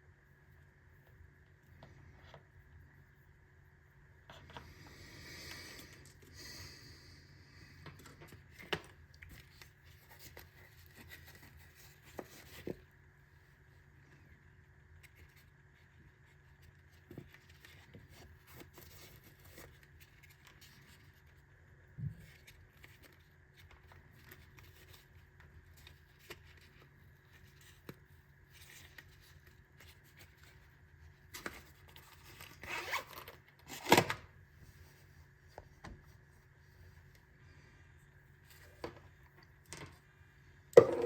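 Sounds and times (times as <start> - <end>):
steady low hum: 0.0 - 32.2.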